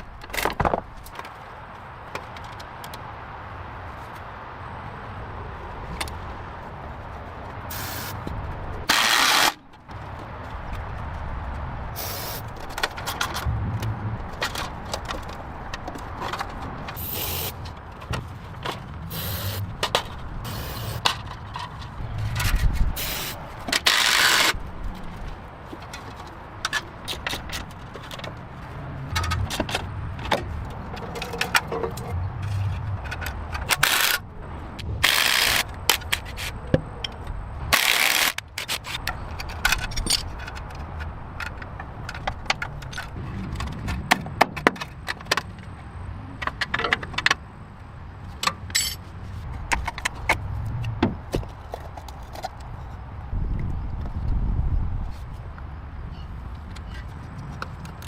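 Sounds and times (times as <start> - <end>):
short hissing bursts: 7.7 - 8.2, 12.0 - 12.4, 17.0 - 17.6, 19.1 - 19.7, 20.5 - 21.0, 23.0 - 23.4
low rumble: 13.4 - 14.8
metal clinks and scrapes: 48.7 - 49.1.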